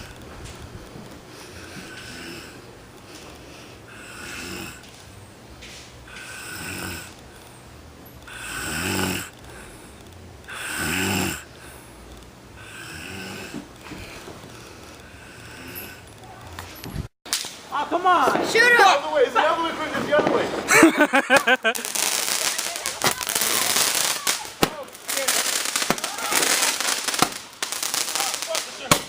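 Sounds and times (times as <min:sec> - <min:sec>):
person snoring: 0:01.3 - 0:02.7, 0:03.5 - 0:04.8, 0:06.0 - 0:07.5, 0:08.2 - 0:12.0, 0:12.6 - 0:16.1.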